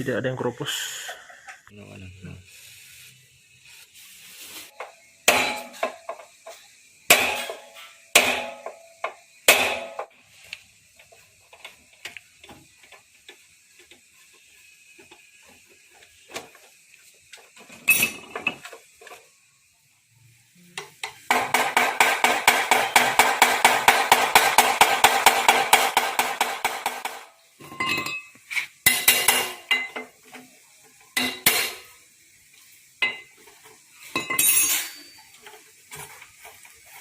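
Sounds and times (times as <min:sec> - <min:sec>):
metal parts clanking: 0:17.8 - 0:18.6, 0:34.2 - 0:35.3.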